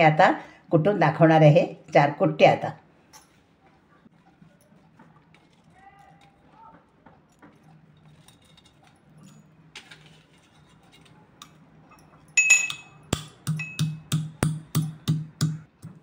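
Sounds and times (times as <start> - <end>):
pestle pounding in metal mortar: 12.4 - 16.0.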